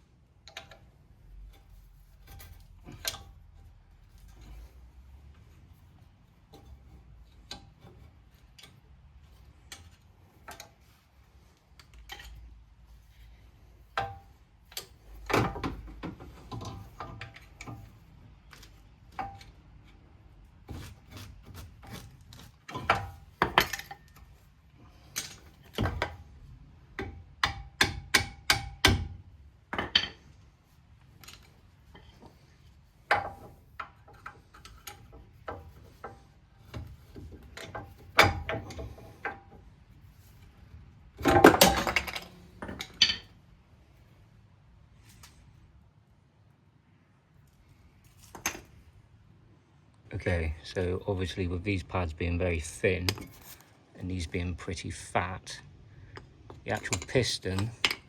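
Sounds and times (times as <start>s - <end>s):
metal tools clinking and knocking: 1.5s - 4.6s, 21.9s - 26.2s, 29.7s - 30.4s, 41.2s - 43.4s, 56.1s - 58.0s.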